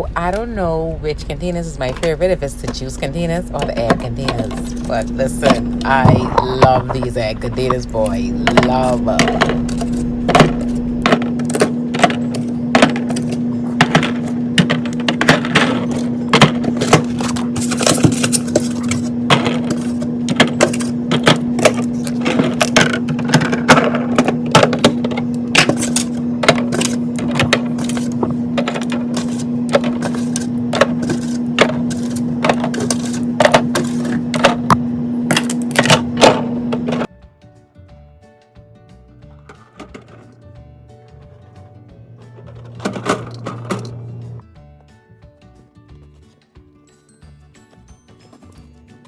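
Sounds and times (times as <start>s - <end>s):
steady low hum: 0.0s - 37.1s, 40.9s - 44.4s
plastic containers clicking and knocking: 8.5s - 34.8s.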